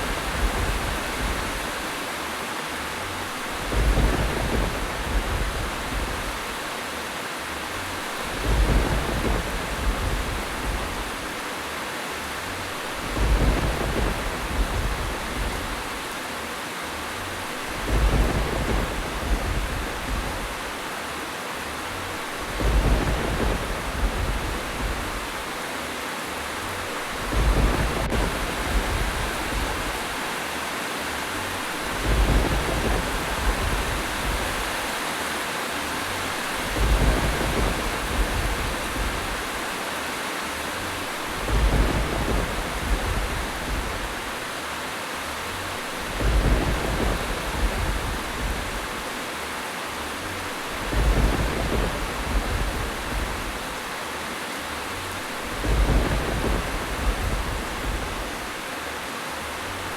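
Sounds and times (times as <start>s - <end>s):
steady rain: 0.0s - 59.9s
low rumble: 3.5s - 6.6s, 8.2s - 11.3s, 12.8s - 16.1s, 17.7s - 20.8s, 22.4s - 25.5s, 27.0s - 30.2s, 31.8s - 34.8s, 36.6s - 39.6s, 41.2s - 44.4s, 45.8s - 49.2s, 50.6s - 53.9s, 55.3s - 58.6s.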